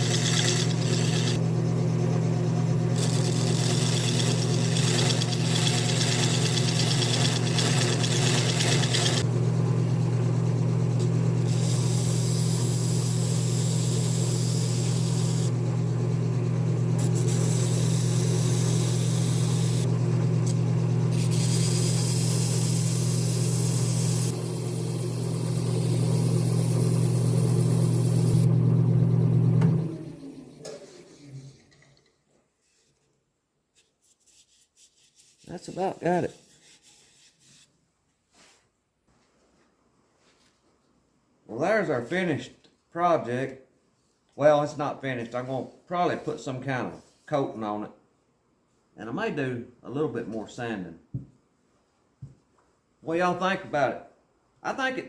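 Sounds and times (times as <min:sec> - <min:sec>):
tool scraping spinning wood: 0:00.0 - 0:01.5, 0:02.5 - 0:09.3, 0:21.1 - 0:28.5
wood lathe motor hum: 0:00.0 - 0:30.8.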